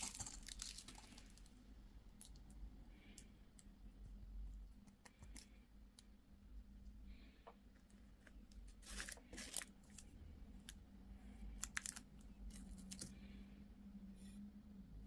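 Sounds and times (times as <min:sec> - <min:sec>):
crisp crackles: 0:00.0 - 0:01.6, 0:11.5 - 0:13.2
faint low hum: 0:00.0 - 0:15.0.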